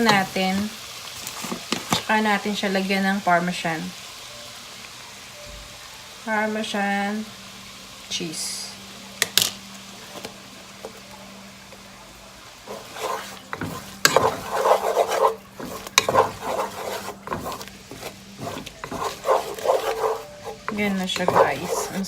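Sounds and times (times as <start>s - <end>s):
utensil scraping a pan: 0.0s - 2.1s, 12.7s - 22.0s.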